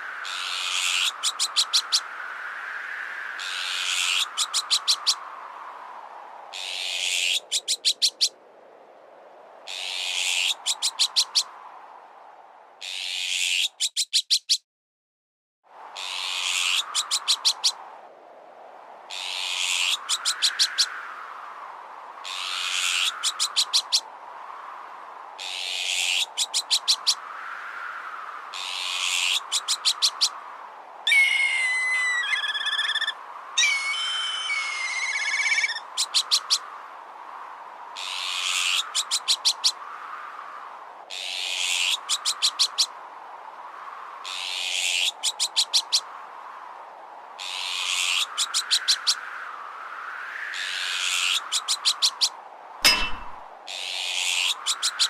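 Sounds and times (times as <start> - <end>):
harsh rasping magpie alarm calls: 12.8 - 14.6, 31.1 - 36.6
whistled bird calls: 31.1 - 36.6.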